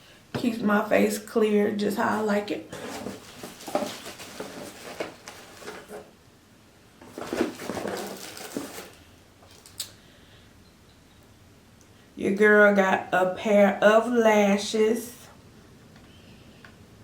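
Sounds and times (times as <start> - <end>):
packaging rustling and clicking: 2.8 - 6.1, 7.0 - 9.9.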